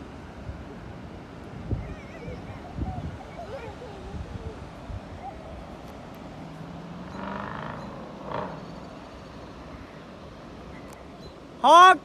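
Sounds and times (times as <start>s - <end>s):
distant engine rumble: 4.5s - 10.8s.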